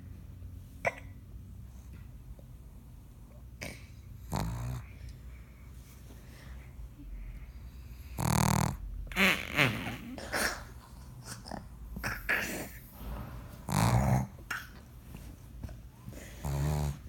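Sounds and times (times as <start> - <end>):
dog breathing: 1.6 - 17.0
dog snoring: 2.7 - 5.0, 7.4 - 14.6, 16.1 - 17.0.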